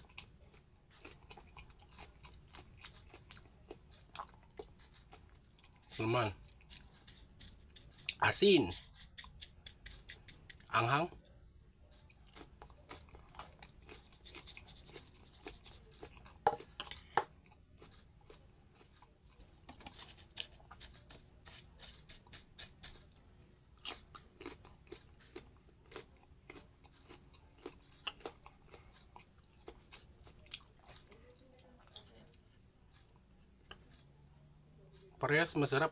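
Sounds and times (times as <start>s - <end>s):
crunchy biting and chewing: 0.0s - 8.2s, 11.9s - 31.3s.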